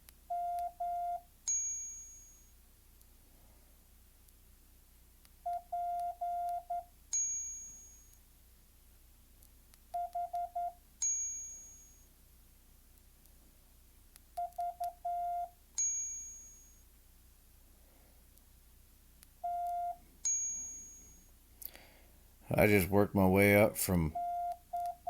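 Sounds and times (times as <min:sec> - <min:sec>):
morse code beeps: 0:00.3 - 0:01.2, 0:05.5 - 0:06.8, 0:14.4 - 0:15.5, 0:19.4 - 0:20.5, 0:24.0 - 0:25.0
bright ding: 0:15.8 - 0:16.8, 0:20.3 - 0:21.2.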